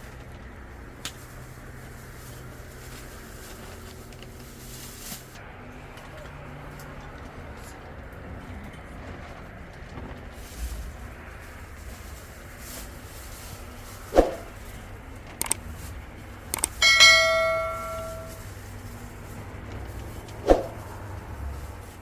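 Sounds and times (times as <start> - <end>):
light clicks: 15.4 - 15.6
metal object ringing: 16.8 - 18.4.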